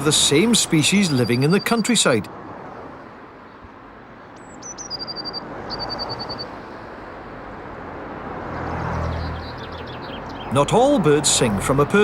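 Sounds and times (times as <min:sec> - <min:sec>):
songbird singing: 0:00.0 - 0:02.3, 0:03.4 - 0:06.6, 0:08.5 - 0:12.0
road traffic: 0:00.0 - 0:12.0
vehicle passing: 0:05.4 - 0:12.0.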